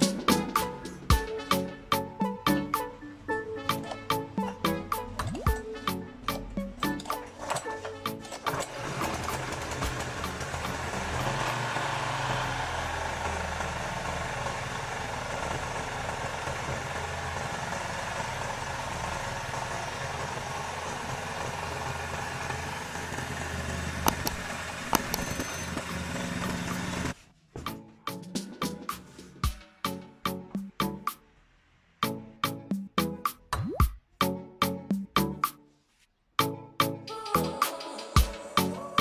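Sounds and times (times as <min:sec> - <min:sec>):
music with a beat: 0:00.0 - 0:07.3, 0:27.6 - 0:31.2, 0:32.0 - 0:35.7, 0:36.4 - 0:39.0
small engine idling: 0:08.3 - 0:27.2
sharp clicks: 0:24.1 - 0:25.6.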